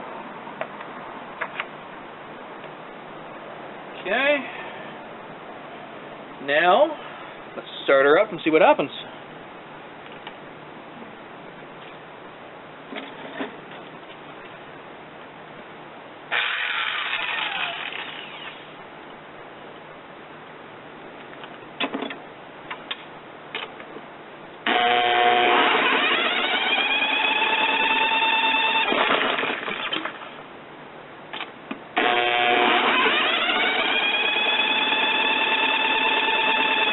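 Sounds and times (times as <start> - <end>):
power drill motor whining: 16.3 - 18.6, 24.7 - 30.1, 32.0 - 36.9.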